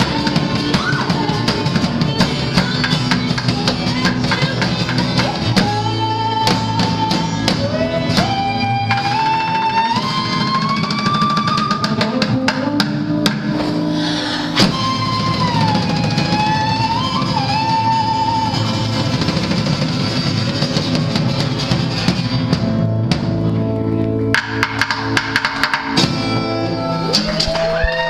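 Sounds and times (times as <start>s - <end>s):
guitar strums: 0.0s - 28.0s
live acoustic band playing: 0.0s - 28.0s
drum hits: 24.3s - 26.4s.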